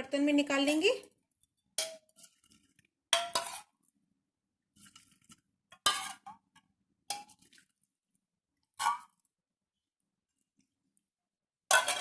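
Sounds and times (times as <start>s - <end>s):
kitchen utensils clinking: 11.7s - 12.0s.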